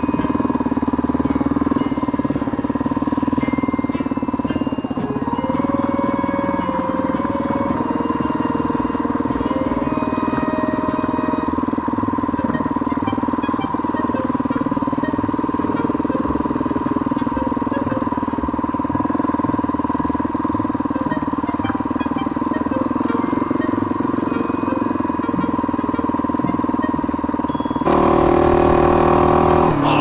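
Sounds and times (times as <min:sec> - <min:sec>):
motorcycle engine running: 0:01.6 - 0:12.2, 0:27.4 - 0:30.0.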